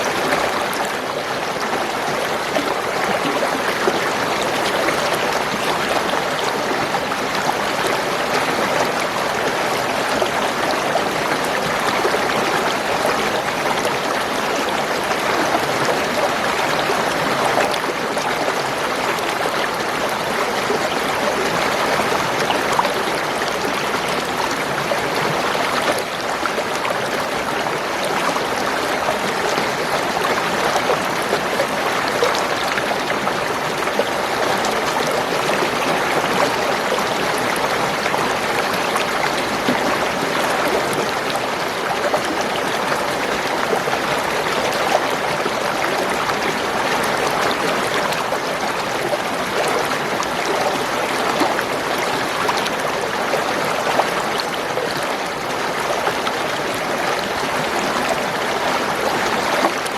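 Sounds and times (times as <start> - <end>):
water babbling over stones: 0.0 - 59.9.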